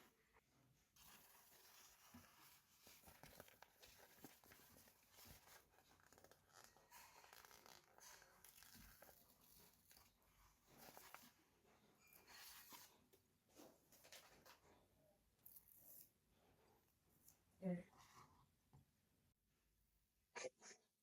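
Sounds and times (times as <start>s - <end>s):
toy packaging rustling and tearing: 1.0s - 10.1s.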